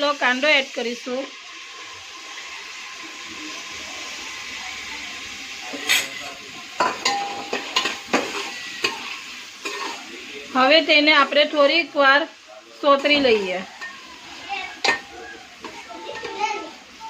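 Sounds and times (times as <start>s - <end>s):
onion sizzling in hot oil: 0.0s - 17.0s.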